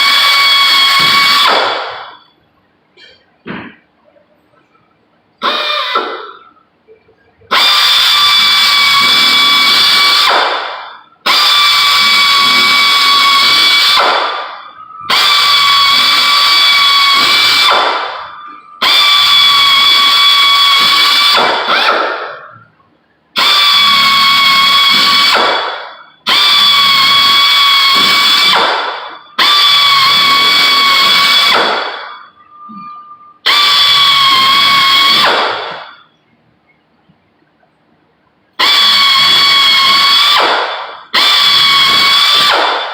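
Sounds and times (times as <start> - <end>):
electric drill whining: 0.0 - 1.6, 7.6 - 10.3, 11.3 - 14.0, 23.4 - 25.4, 29.4 - 31.6, 33.5 - 35.4, 38.6 - 40.5, 41.2 - 42.5.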